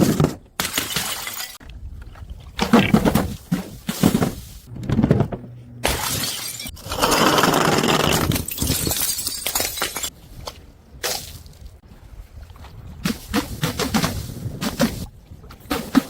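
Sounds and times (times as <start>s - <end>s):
glass bottles shattering on stairs: 0.6s - 1.6s, 5.9s - 6.8s, 8.0s - 10.1s
broken glass clinking: 5.9s - 6.8s, 8.3s - 10.1s.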